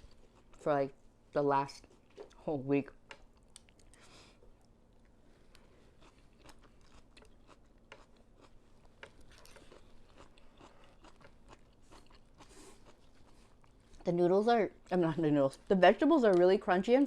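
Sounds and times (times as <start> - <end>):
crunchy chewing of raw vegetables: 5.5 - 14.1.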